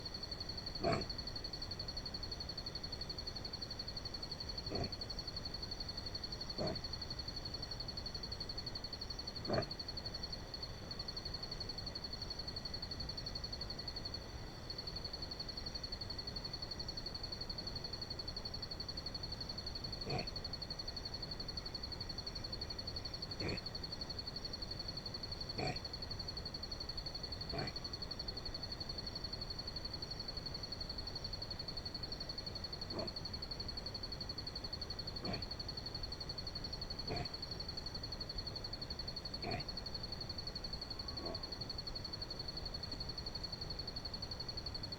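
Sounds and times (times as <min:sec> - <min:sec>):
animal snoring calls: 0:00.8 - 0:01.1, 0:04.7 - 0:05.0, 0:06.6 - 0:06.8, 0:09.5 - 0:09.7, 0:20.0 - 0:20.4, 0:23.4 - 0:23.7, 0:25.6 - 0:25.9, 0:27.5 - 0:27.9, 0:32.9 - 0:33.2, 0:35.2 - 0:35.5, 0:37.0 - 0:37.4, 0:39.4 - 0:39.7, 0:41.1 - 0:41.5.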